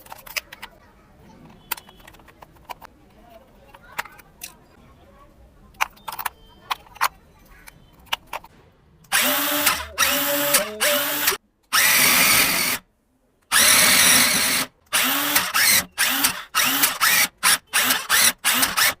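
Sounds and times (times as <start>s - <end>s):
electric rc car motors whirring: 9.1s - 12.8s, 13.5s - 19.0s.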